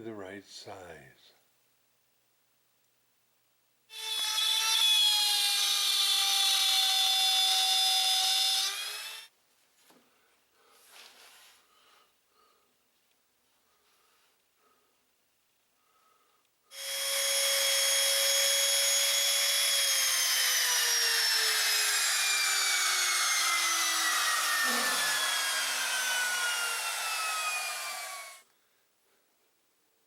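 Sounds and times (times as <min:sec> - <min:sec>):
table saw motor whining: 0:03.9 - 0:09.3, 0:16.7 - 0:28.4.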